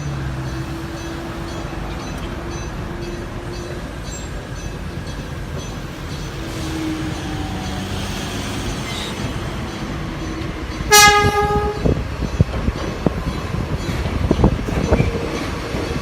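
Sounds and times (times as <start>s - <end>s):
electric train rumbling past: 0.0s - 16.0s
train horn toot: 10.9s - 12.0s.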